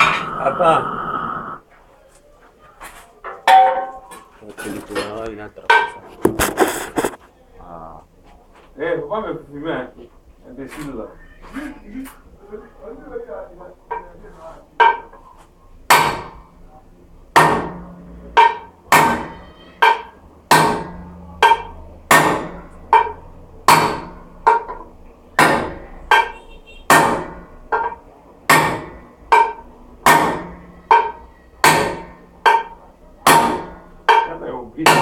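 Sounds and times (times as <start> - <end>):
hammer striking metal: 0.0 - 0.8, 3.4 - 4.2, 5.6 - 6.5, 14.8 - 15.2, 15.9 - 16.5, 17.3 - 24.8, 25.4 - 35.0.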